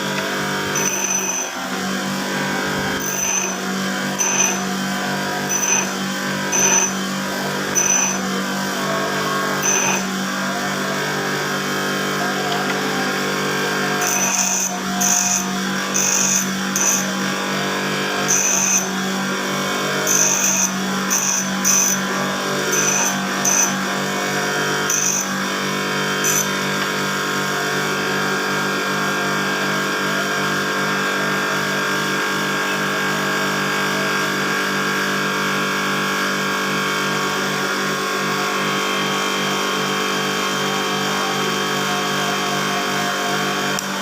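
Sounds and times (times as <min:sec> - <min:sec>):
small electric motor running: 0:00.0 - 0:37.7
short high-pitched squeaks: 0:03.0 - 0:03.6, 0:04.2 - 0:04.7, 0:05.5 - 0:07.0.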